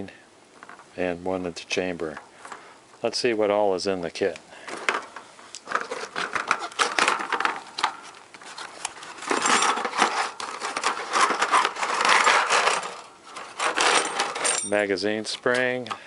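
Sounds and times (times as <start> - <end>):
cardboard packaging rustling: 4.6 - 14.5
small parts knocking and clicking: 4.6 - 14.8.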